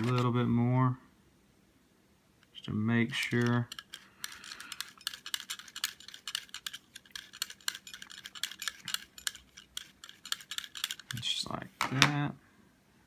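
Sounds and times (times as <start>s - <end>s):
needle grinding against stone: 0.0s - 0.4s, 3.1s - 11.4s.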